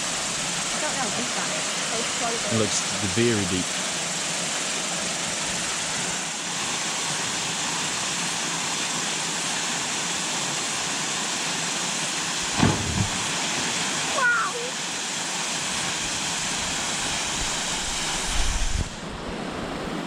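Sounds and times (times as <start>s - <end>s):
waterfall rushing: 0.0s - 19.2s
low thumps: 12.5s - 13.4s.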